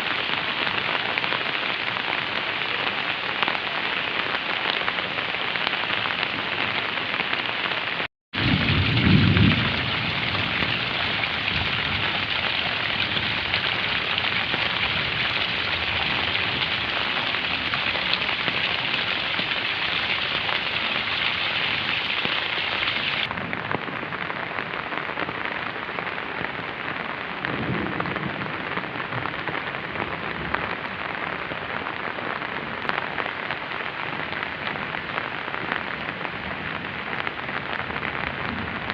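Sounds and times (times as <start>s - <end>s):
heavy rain hiss: 8.4s - 23.3s.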